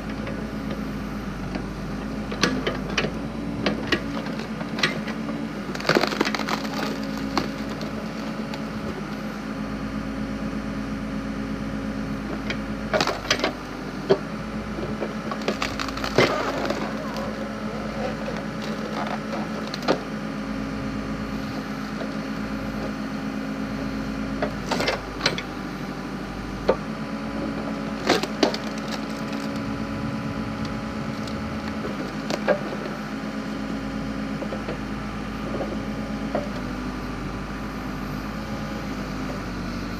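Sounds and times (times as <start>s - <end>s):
backhoe engine running: 0.0s - 39.9s
wood cracking and splintering: 4.0s - 9.2s, 15.0s - 20.0s, 27.9s - 33.5s.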